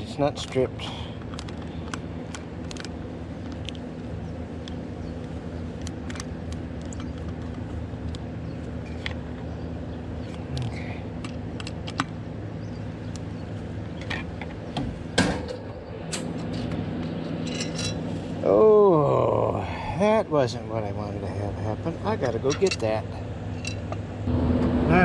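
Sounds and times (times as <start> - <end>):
low mechanical hum: 0.0 - 25.0
tools clicking and tapping: 22.4 - 22.8.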